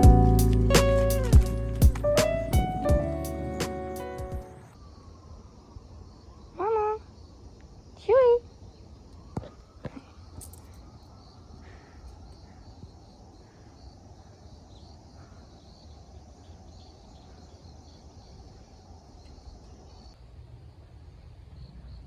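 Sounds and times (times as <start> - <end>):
steady low rumble: 0.0 - 4.4
faint insects chirping: 0.0 - 22.0.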